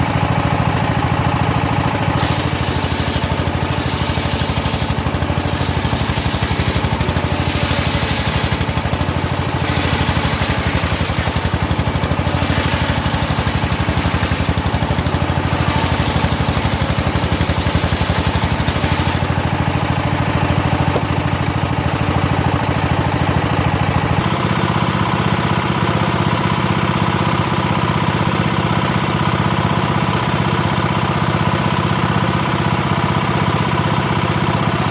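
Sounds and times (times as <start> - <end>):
engine running: 0.0 - 34.9
circular saw ripping wood: 1.9 - 24.3, 34.4 - 34.9.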